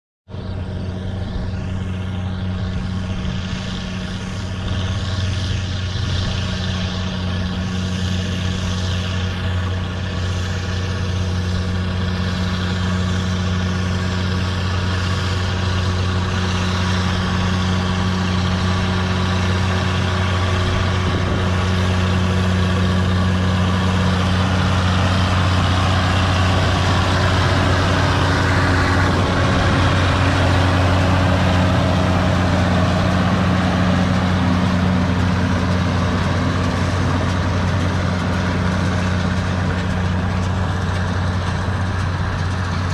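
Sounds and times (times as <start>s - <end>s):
faint rising whine: 0.3s - 40.6s
tractor diesel engine running: 0.3s - 42.9s.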